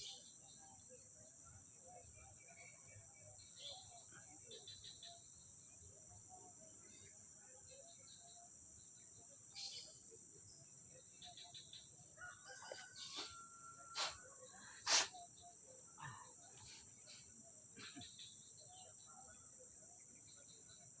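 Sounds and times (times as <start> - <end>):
crickets chirping: 0.0 - 21.0
rooster crowing: 12.2 - 14.4.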